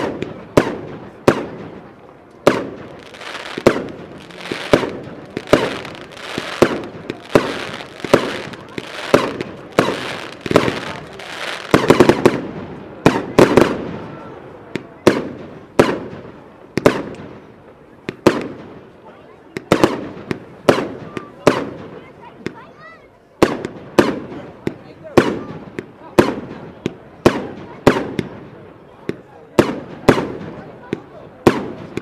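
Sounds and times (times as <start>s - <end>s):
firework crackle: 0.0s - 17.4s
firework bursts banging: 0.0s - 18.9s, 19.6s - 22.6s, 23.4s - 32.0s.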